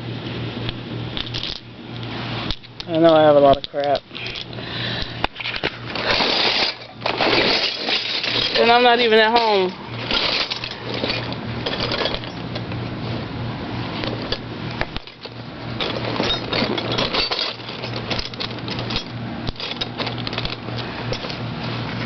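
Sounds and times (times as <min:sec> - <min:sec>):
steady low hum: 0:00.0 - 0:22.0
metal tools rattling in toolbox: 0:05.4 - 0:12.6, 0:14.0 - 0:21.5.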